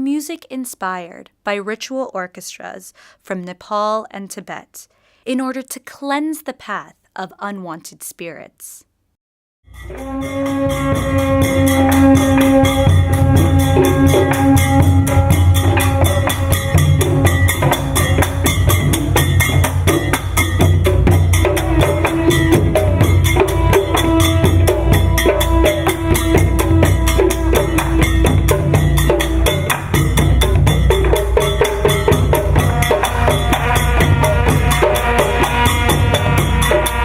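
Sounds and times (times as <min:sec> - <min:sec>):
held horn notes: 0:09.7 - 0:18.8, 0:20.8 - 0:29.8
cymbals and drums: 0:09.7 - 0:37.0.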